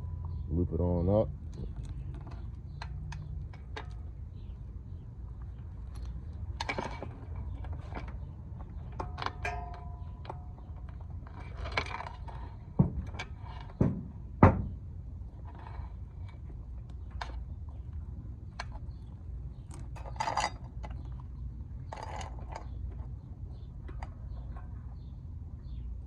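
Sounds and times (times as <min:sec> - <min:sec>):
steady low hum: 0:00.0 - 0:26.0
sharp knocks: 0:13.8 - 0:14.8.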